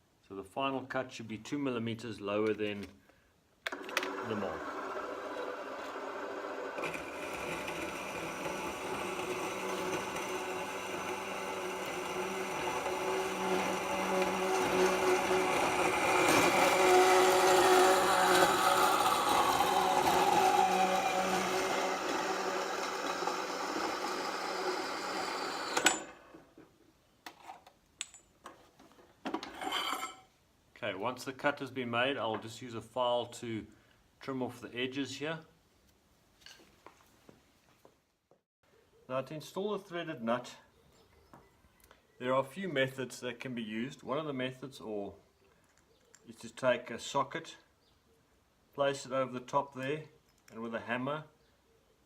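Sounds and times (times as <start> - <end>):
bandsaw cutting metal tube: 3.7 - 26.2.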